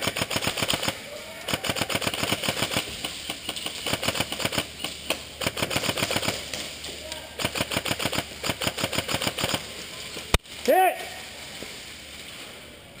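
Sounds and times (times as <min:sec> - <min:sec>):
airsoft guns firing full-auto: 0:00.0 - 0:06.7, 0:07.4 - 0:09.7.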